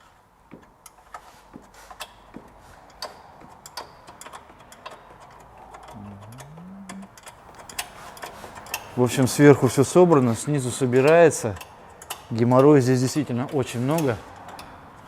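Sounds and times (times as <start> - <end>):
short pitched hum: 5.9 - 8.8.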